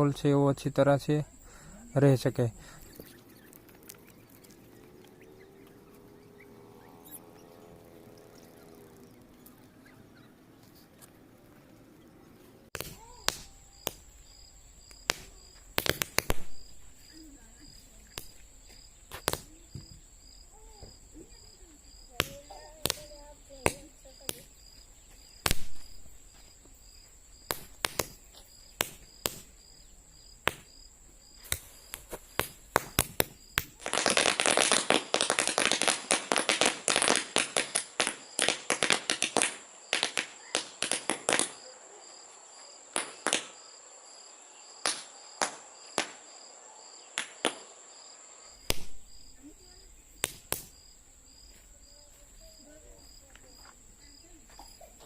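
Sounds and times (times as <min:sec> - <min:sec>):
paper caps popping: 0:12.7 - 0:14.2, 0:14.9 - 0:16.7, 0:27.5 - 0:28.2, 0:28.8 - 0:29.5, 0:48.6 - 0:49.0.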